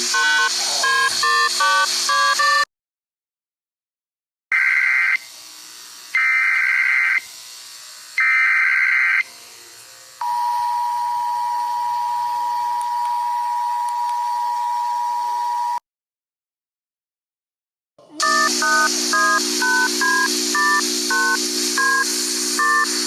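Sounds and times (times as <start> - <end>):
digital header tones: 0.1 - 2.6, 18.2 - 23.0
two-tone alert signal: 0.1 - 2.7, 18.2 - 23.0.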